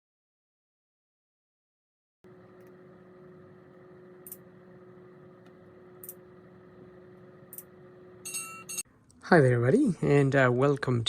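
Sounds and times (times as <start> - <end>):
faint steady hum: 2.2 - 10.7.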